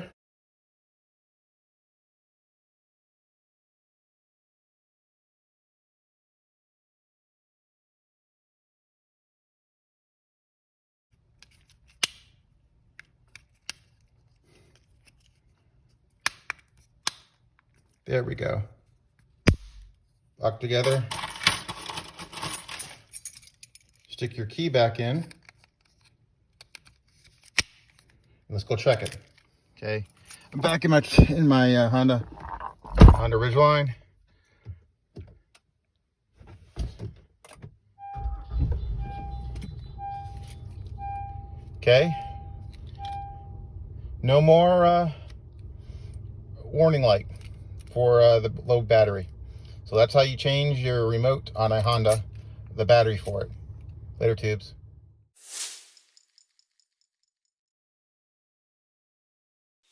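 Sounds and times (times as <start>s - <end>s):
handling clicks and knocks: 30.7s - 31.5s
low rumble: 32.1s - 33.6s
truck warning chime beeping: 38.0s - 44.0s.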